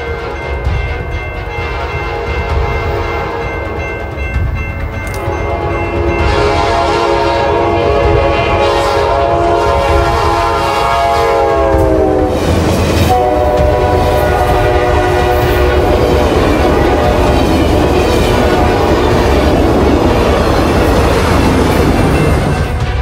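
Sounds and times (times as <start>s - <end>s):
low rumble of running train: 0.0s - 23.0s
locomotive air horn: 5.2s - 12.4s, 13.1s - 17.4s.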